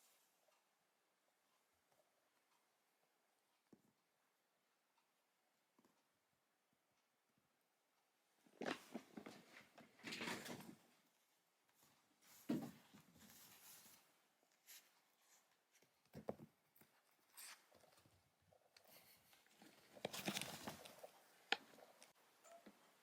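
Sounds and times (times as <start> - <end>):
rustling: 11.7 - 23.0.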